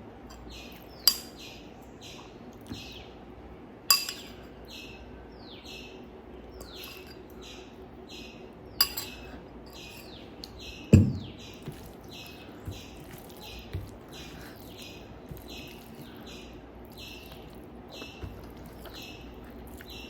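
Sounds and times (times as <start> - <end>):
sharp clink: 3.9 - 4.3, 8.8 - 9.2
bird chirping: 3.9 - 20.0
dull thump: 10.9 - 11.4.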